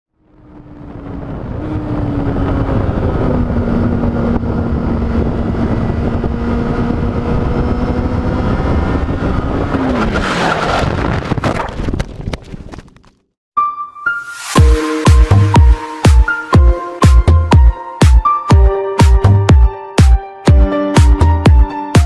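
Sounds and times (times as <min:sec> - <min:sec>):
motorcycle engine: 0:00.2 - 0:10.8
wind rush over microphone: 0:00.2 - 0:13.0.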